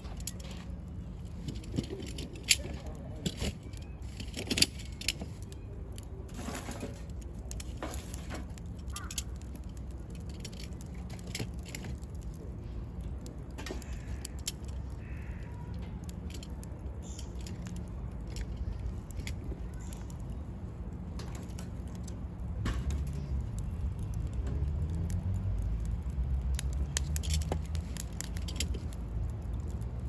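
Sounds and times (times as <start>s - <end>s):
campfire crackling and popping: 0.0s - 30.0s
faint bird calling: 13.8s - 15.8s.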